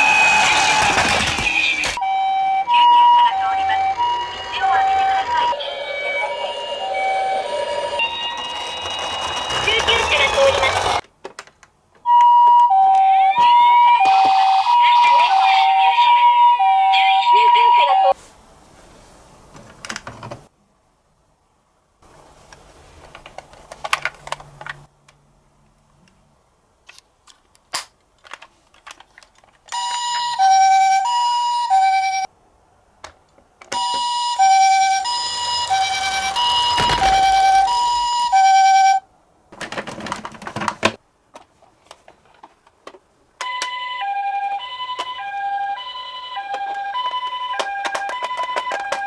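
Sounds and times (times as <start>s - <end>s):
rattling noise bursts: 0.0s - 2.0s, 7.4s - 11.0s, 34.5s - 38.9s
toy two-tone siren wail: 0.0s - 11.0s, 12.1s - 18.1s, 29.8s - 32.3s, 33.7s - 39.0s, 43.4s - 49.0s.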